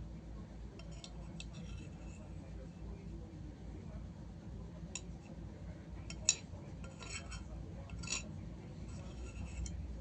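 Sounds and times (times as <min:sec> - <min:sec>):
low steady hum: 0:00.0 - 0:10.0
spoon clinking and scraping on plate: 0:00.8 - 0:02.6, 0:06.0 - 0:10.0.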